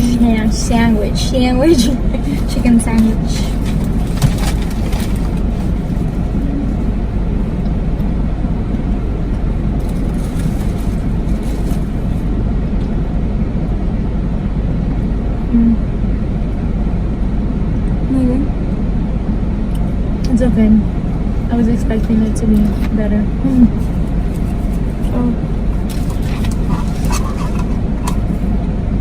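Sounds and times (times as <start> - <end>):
faint rustles: 0.0 - 7.6, 9.2 - 12.3, 20.8 - 28.6
car engine rumble inside cabin: 0.0 - 29.0.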